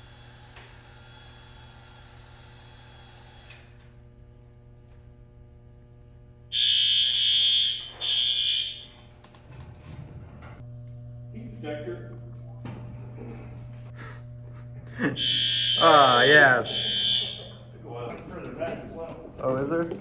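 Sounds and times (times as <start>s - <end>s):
low electrical hum: 0.0s - 20.0s
fire alarm horn blasts: 6.5s - 9.1s, 15.0s - 17.7s.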